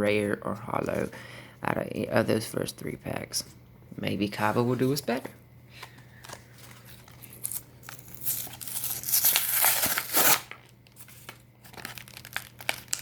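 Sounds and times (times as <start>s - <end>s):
foil wrapper crinkling: 6.7s - 13.0s
foil wrapper tearing: 7.2s - 13.0s.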